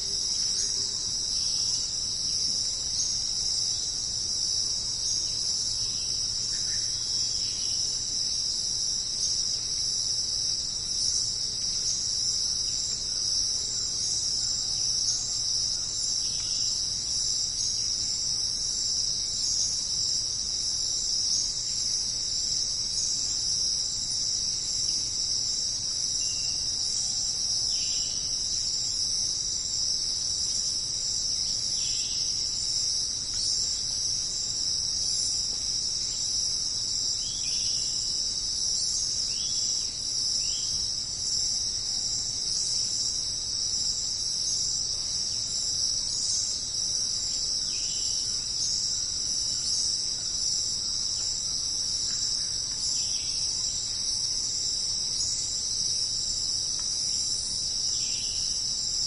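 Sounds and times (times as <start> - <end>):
insect chorus trilling drone: 0.0 - 59.0.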